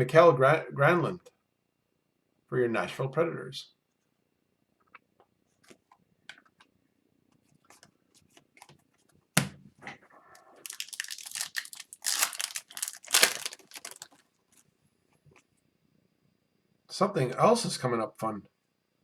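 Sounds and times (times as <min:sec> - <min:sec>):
foil wrapper tearing and crinkling: 0:10.6 - 0:14.2.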